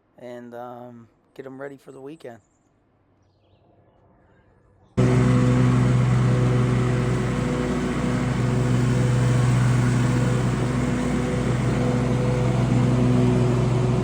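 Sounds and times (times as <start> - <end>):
lawn mower engine running: 5.0 - 14.0.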